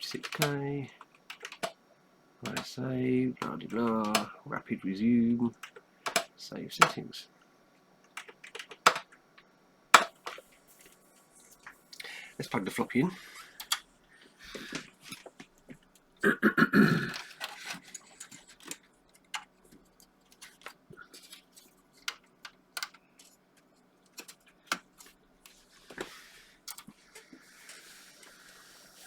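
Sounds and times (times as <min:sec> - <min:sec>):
floppy drive being handled: 0:00.1 - 0:01.8, 0:02.4 - 0:02.7, 0:03.4 - 0:04.3, 0:05.6 - 0:07.0, 0:08.1 - 0:09.2, 0:10.0 - 0:10.5, 0:17.1 - 0:28.3.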